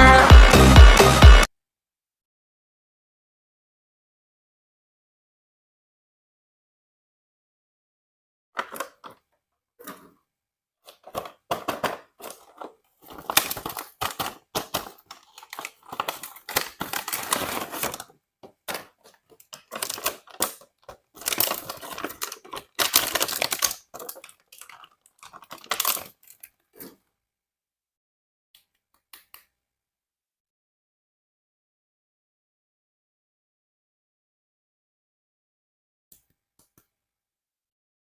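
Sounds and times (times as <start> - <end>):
plastic toy parts clicking: 8.6 - 9.2, 10.9 - 26.6
plastic packaging crinkling and tearing: 10.9 - 26.7.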